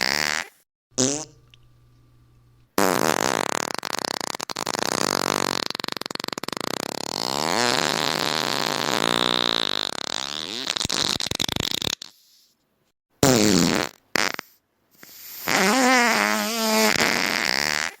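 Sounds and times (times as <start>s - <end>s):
short fart blasts: 0.0s - 1.4s, 2.8s - 12.3s, 13.2s - 18.0s
long wavering farts: 2.8s - 12.1s.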